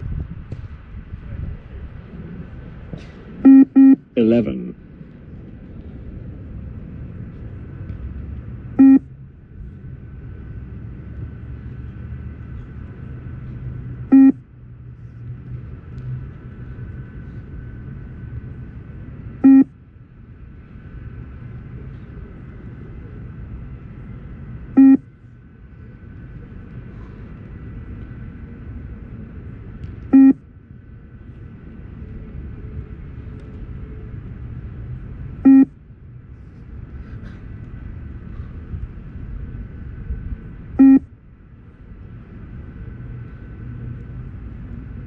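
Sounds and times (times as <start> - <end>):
steady low rumble: 0.0 - 45.0
short electronic beep: 3.5 - 4.0, 8.8 - 9.0, 14.1 - 14.4, 19.4 - 19.7, 24.8 - 25.0, 30.1 - 30.4, 35.4 - 35.7, 40.8 - 41.0.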